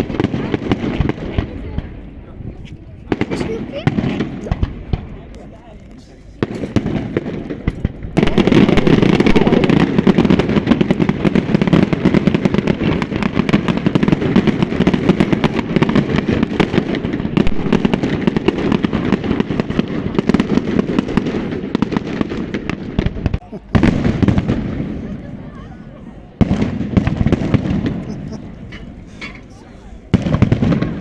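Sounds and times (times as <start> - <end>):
fireworks crackling and banging: 0.0 - 31.0.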